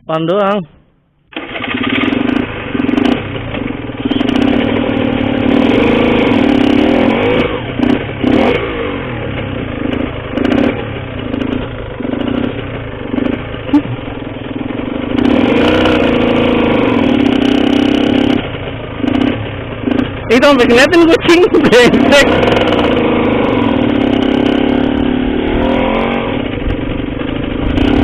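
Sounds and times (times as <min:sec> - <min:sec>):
motorcycle engine revving: 0:01.3 - 0:28.0.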